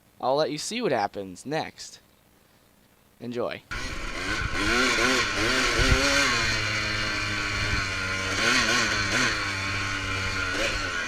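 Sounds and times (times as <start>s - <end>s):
dirt bike engine revving: 3.7s - 11.0s.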